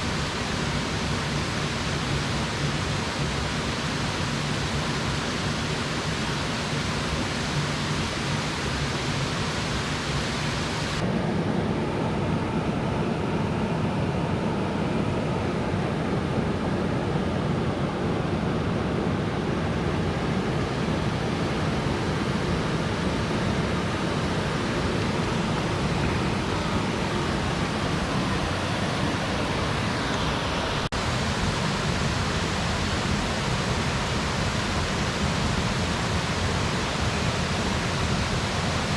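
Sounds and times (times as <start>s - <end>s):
water rushing over rocks: 0.0s - 11.0s, 20.7s - 38.9s.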